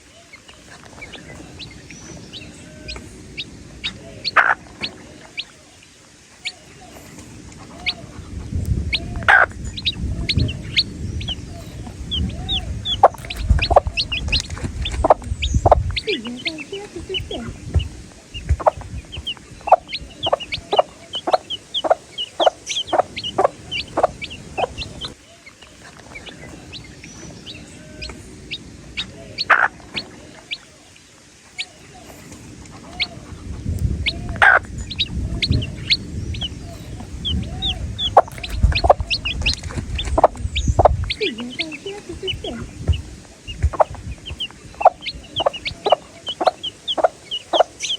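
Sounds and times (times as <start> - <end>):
baby chicks peeping: 0.0 - 47.9
low rumble: 7.4 - 22.1, 32.4 - 47.1.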